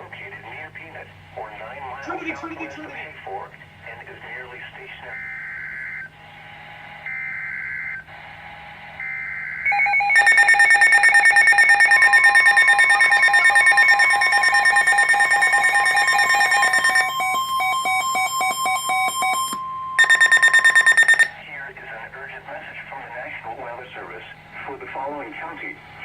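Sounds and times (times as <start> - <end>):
rapid alarm beeping: 5.0 - 6.2, 7.0 - 21.4
steady warning alarm tone: 5.0 - 21.4.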